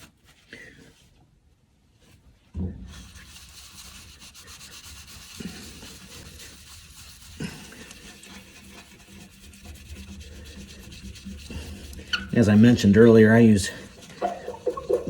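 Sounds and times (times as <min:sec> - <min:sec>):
paper towel rubbing on glass: 0:02.9 - 0:15.0.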